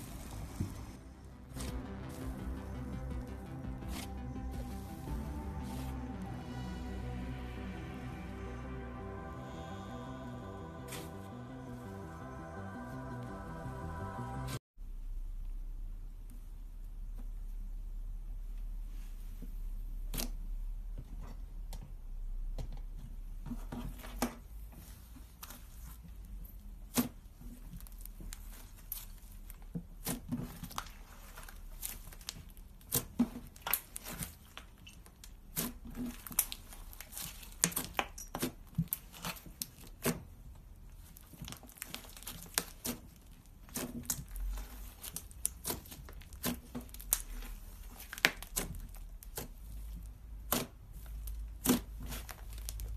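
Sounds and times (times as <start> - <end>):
slime squelching by hand: 24.8 - 52.9.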